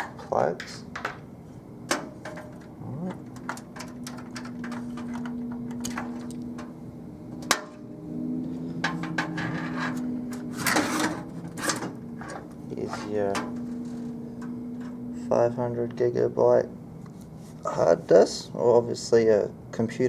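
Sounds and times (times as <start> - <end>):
steady low hum: 0.0 - 20.0
cable plugs clicking and knocking: 1.9 - 7.7.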